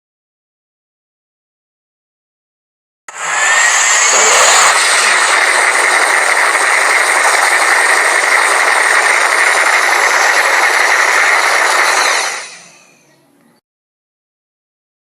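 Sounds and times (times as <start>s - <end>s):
loud rushing noise: 3.1s - 13.0s.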